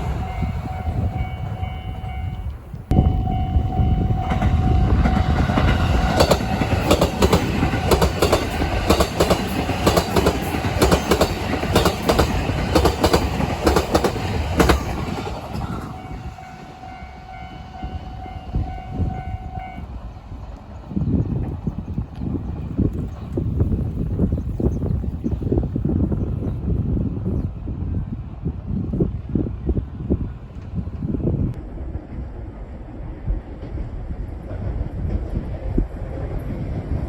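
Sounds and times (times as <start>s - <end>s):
crossing warning bell: 0.0s - 10.3s, 14.6s - 20.0s
train wheels clattering: 0.0s - 17.0s.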